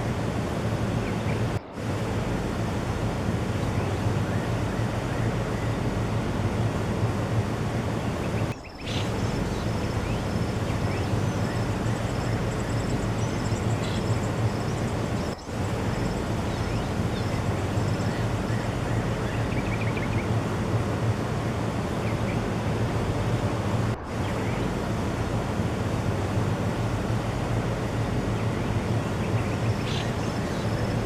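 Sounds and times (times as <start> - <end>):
steady rushing noise: 0.0 - 31.0.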